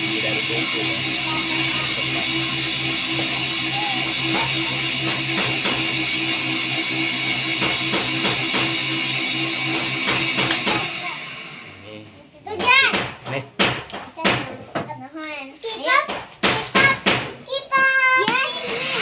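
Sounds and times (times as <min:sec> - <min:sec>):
steady low hum: 0:00.0 - 0:12.4.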